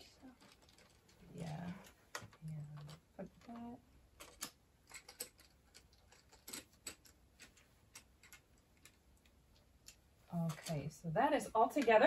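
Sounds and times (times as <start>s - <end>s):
plastic toy parts clicking: 0.3s - 1.1s, 2.1s - 10.8s.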